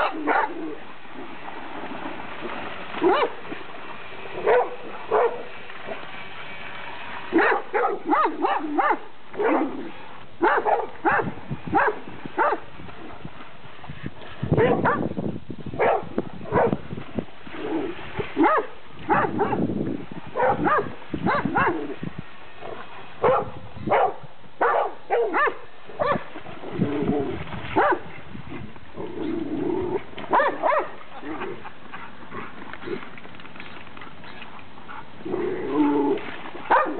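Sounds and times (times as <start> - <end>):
dogs barking: 0.0 - 0.6, 3.0 - 3.4, 4.4 - 5.5, 7.4 - 9.7, 10.4 - 12.6, 14.6 - 15.1, 15.8 - 16.8, 18.4 - 19.6, 20.4 - 21.8, 23.2 - 26.3, 27.8 - 28.0, 30.3 - 32.2, 36.7 - 36.9.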